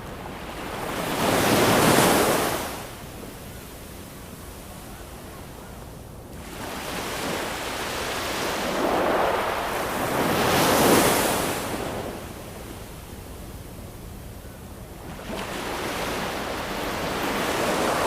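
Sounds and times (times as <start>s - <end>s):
ocean waves breaking: 0.0s - 3.0s, 6.4s - 12.2s, 15.0s - 18.0s.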